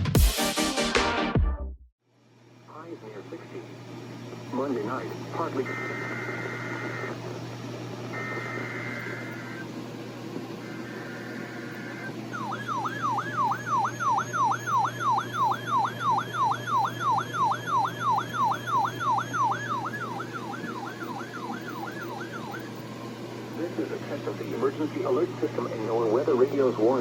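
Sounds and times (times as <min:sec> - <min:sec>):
siren-like sweeping alarm tone: 0:08.1 - 0:09.7, 0:10.6 - 0:22.9
two-tone digital data burst: 0:10.6 - 0:22.8.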